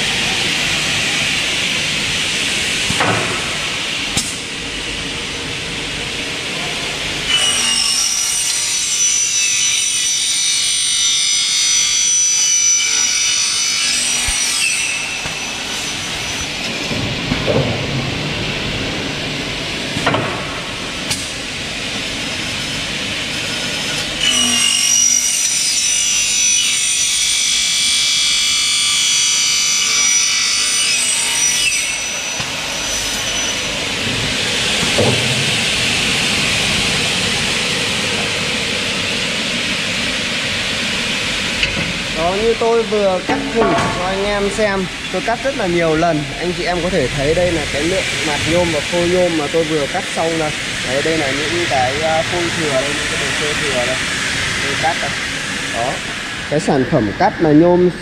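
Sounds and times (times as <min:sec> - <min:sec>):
machine hissing: 0:42.1 - 0:56.6.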